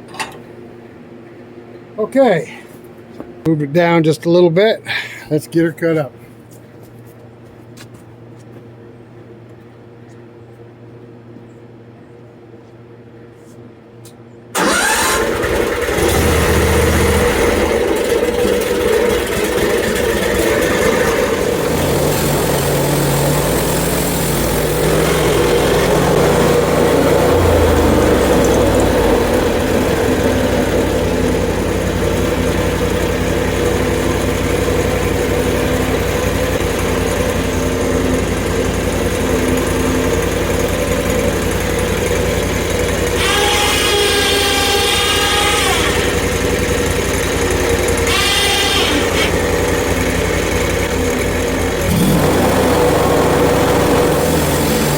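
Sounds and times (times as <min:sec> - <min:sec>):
gas engine running loudly: 0:14.6 - 0:54.9.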